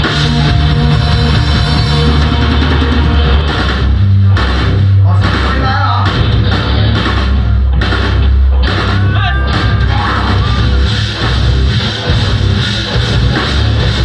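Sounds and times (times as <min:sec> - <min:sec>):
bass guitar: 0:00.0 - 0:14.0
distorted electric guitars: 0:00.0 - 0:14.0
drums: 0:00.0 - 0:14.0.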